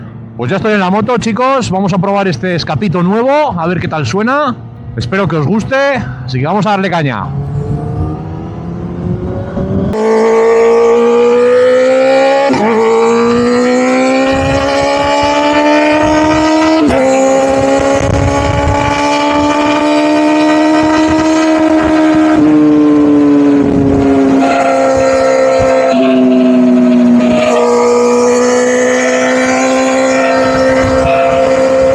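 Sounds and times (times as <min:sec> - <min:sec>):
motorcycle engine revving: 0:07.0 - 0:31.9.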